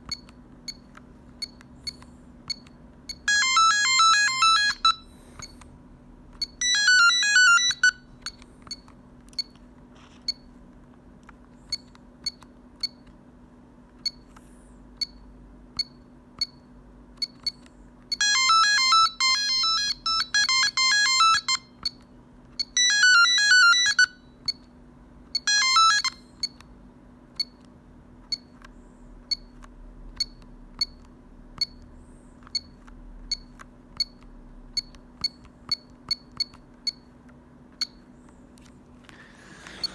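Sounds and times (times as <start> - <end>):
electronic ringtone melodies: 3.3 - 5.0, 6.6 - 8.0, 18.2 - 21.6, 22.8 - 24.2, 25.5 - 26.1.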